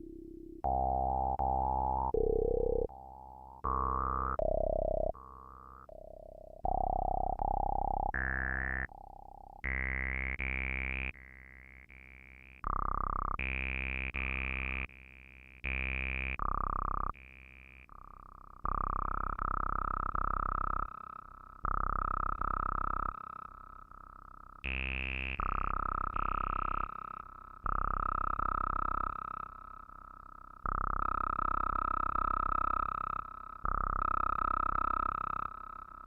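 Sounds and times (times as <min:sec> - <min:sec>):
buzzy synth notes arpeggiating: 0:00.0 - 0:10.8.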